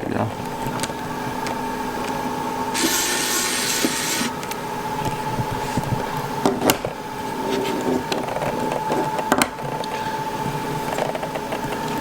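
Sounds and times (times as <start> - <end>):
tool scraping phone parts: 2.8 - 4.3.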